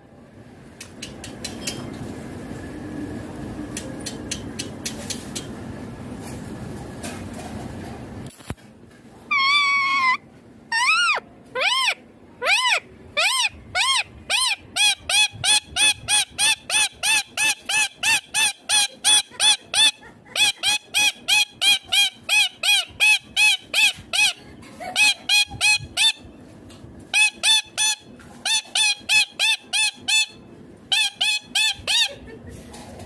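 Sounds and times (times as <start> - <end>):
parakeet calling: 9.3 - 24.4, 27.2 - 32.1.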